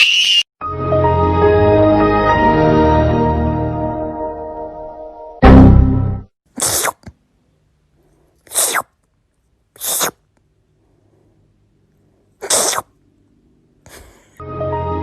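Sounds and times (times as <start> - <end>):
cat sneezing: 6.5 - 7.2, 8.4 - 9.0, 9.8 - 10.3, 12.4 - 13.0.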